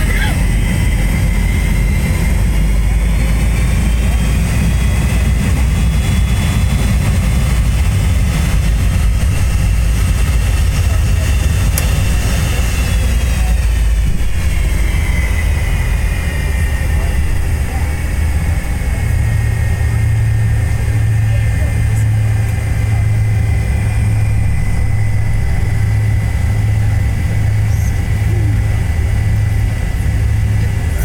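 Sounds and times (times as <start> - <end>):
jet engine high whine: 0.0 - 31.0
jet engine low rumble: 0.0 - 31.0.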